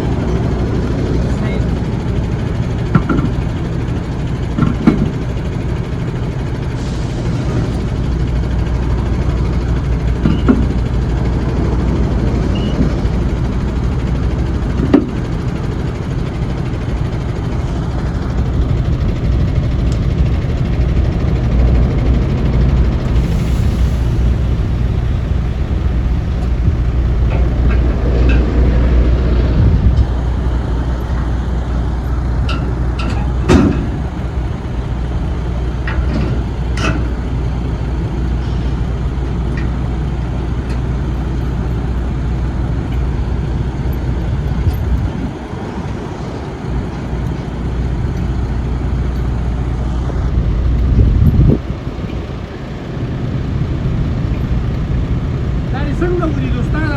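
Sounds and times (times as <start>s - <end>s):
diesel truck engine idling: 0.0s - 56.9s.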